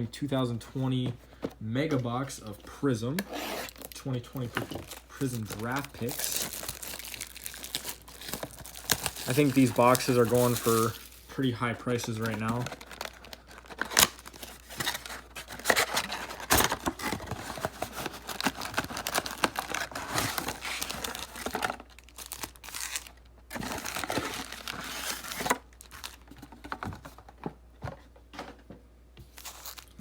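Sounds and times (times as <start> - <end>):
plastic wrapping crinkling and tearing: 3.6 - 26.5, 29.3 - 30.0
plastic wrap snapping: 4.8 - 11.2.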